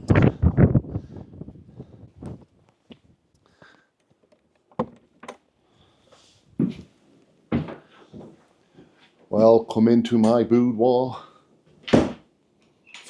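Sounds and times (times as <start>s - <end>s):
wooden knocks and thuds: 4.7s - 5.4s.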